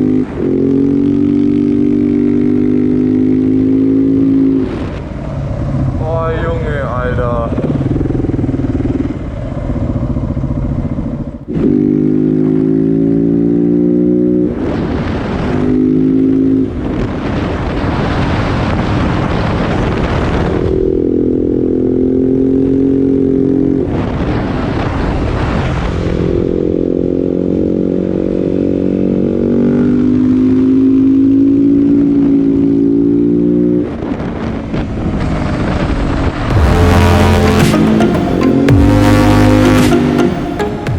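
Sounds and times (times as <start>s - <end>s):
motorcycle engine revving: 0.0s - 6.1s, 7.3s - 40.9s
wind noise on microphone: 14.4s - 15.8s, 16.6s - 21.2s, 23.6s - 27.3s, 33.8s - 36.7s.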